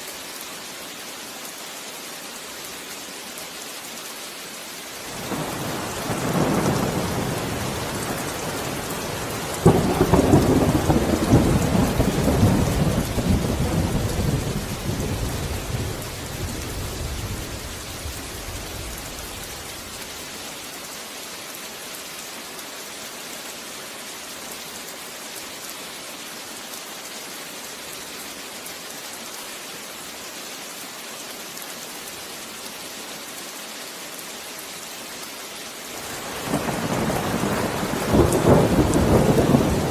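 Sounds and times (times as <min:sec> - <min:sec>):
steady rain: 0:00.0 - 0:39.9
thunder rumbling: 0:05.2 - 0:19.7, 0:36.1 - 0:39.9.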